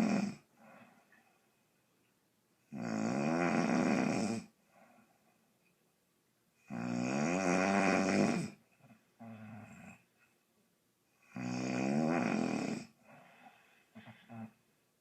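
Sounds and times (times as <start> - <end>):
woman snoring loudly: 0.0 - 0.4, 2.7 - 4.5, 6.7 - 8.6, 11.2 - 13.0
soft breath: 0.5 - 1.8, 4.6 - 5.6, 12.9 - 14.8.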